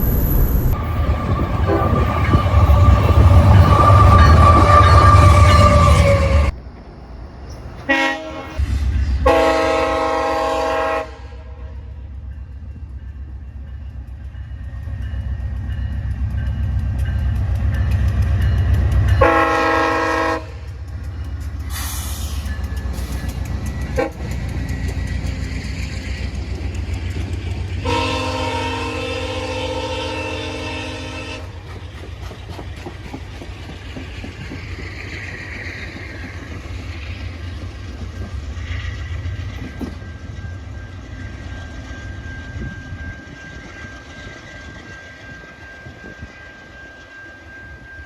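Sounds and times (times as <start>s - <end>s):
low rumble of a train: 0.0s - 48.0s
locomotive air horn blasts: 1.6s - 6.5s, 7.9s - 8.6s, 9.2s - 11.9s, 19.2s - 20.6s, 24.0s - 24.3s, 27.8s - 31.6s
wheels clicking over rail joints: 31.6s - 40.5s.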